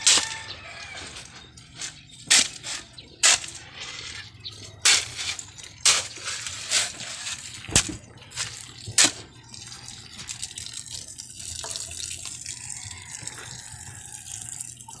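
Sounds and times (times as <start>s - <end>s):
running splashing water: 4.5s - 15.0s.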